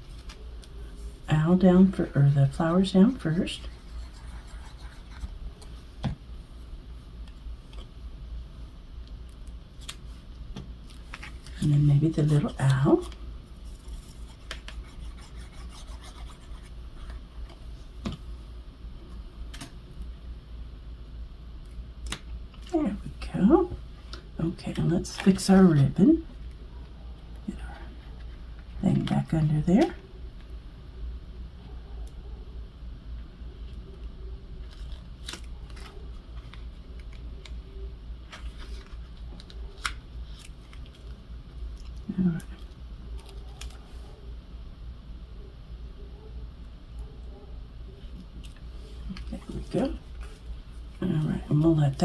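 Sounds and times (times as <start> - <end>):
low steady hum: 0.0 - 52.0
paper rubbing: 3.5 - 5.4, 13.7 - 17.2
paper and ribbon rustling: 34.6 - 37.2, 38.3 - 41.2.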